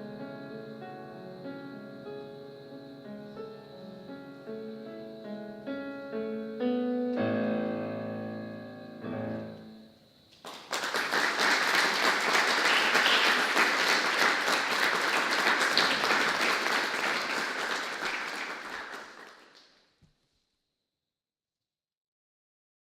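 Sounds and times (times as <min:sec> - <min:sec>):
piano chords: 0:00.0 - 0:10.0
audience applause: 0:10.4 - 0:19.6.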